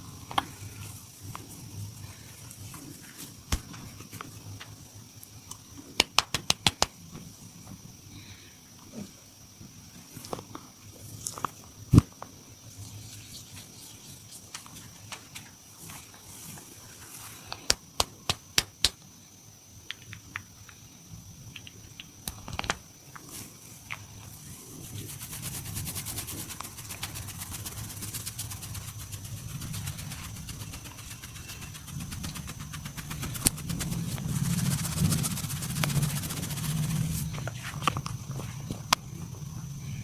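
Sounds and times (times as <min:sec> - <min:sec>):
hands patting on body: 0:06.0 - 0:07.0, 0:17.5 - 0:19.0, 0:26.2 - 0:38.0.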